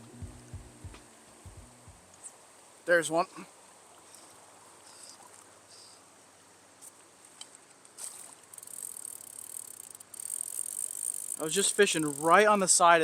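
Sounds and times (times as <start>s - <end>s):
stream water rushing: 0.0s - 8.5s, 11.4s - 13.0s
crickets droning: 3.9s - 6.0s, 8.4s - 13.0s
rough irregular noise: 7.9s - 13.0s.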